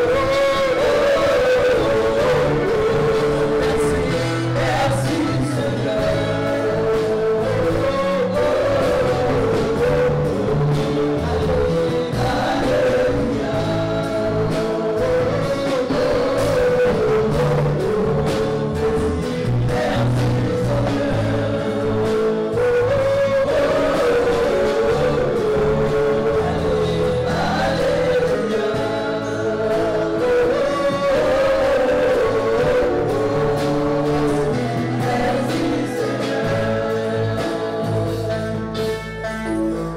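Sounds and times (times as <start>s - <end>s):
band with bass and beat: 0.0s - 39.9s
choir singing gospel music: 0.0s - 39.9s.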